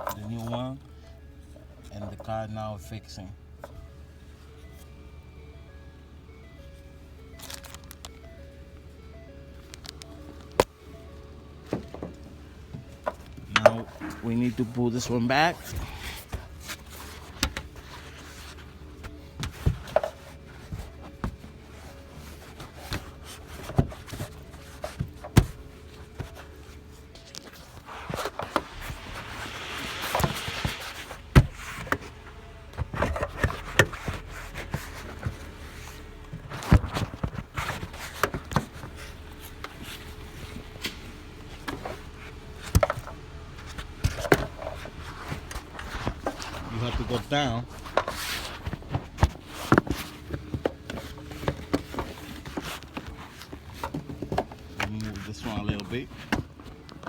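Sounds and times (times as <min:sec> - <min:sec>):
scraping rustle: 0:12.8 - 0:57.0.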